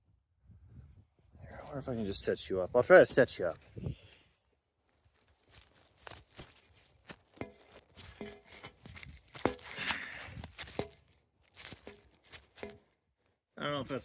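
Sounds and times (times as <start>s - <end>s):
camera handling rustling and clicks: 5.0s - 12.8s.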